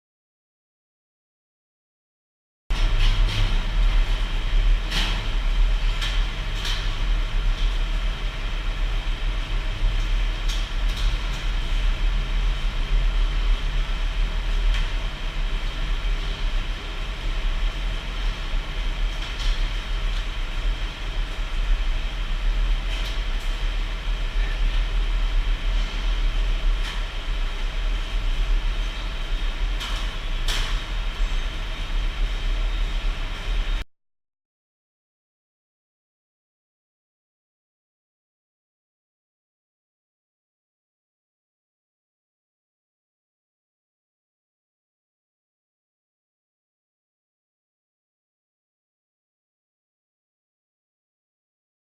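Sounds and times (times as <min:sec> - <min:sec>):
industrial machinery humming: 0:02.7 - 0:33.8.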